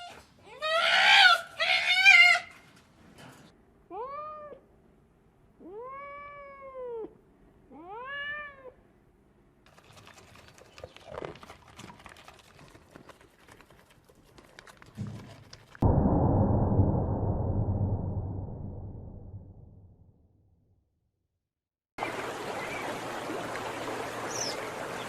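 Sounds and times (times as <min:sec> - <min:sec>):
cat meowing: 0:05.6 - 0:08.8
loud low rumbling: 0:15.8 - 0:20.5.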